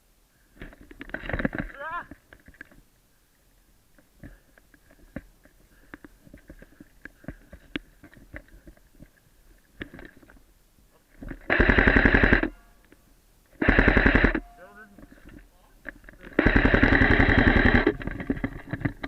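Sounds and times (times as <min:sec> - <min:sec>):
rustling: 0:00.4 - 0:19.0
faint clicks: 0:00.6 - 0:10.5
airsoft gun full-auto burst: 0:11.4 - 0:12.6, 0:13.6 - 0:14.5, 0:16.3 - 0:18.5.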